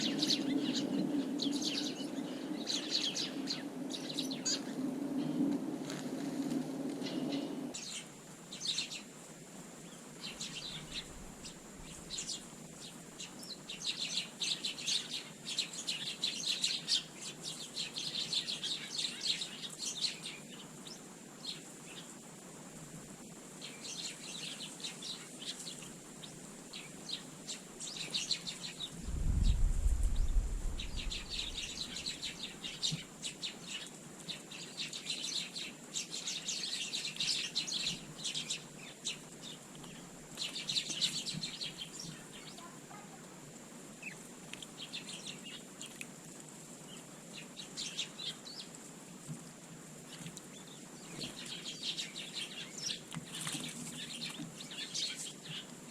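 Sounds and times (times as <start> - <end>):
sparrows chirping: 0.0 - 6.0, 7.0 - 9.1, 9.8 - 22.2, 23.6 - 43.2, 44.0 - 46.0, 46.8 - 48.8, 50.1 - 55.7
low rumble: 28.9 - 32.2.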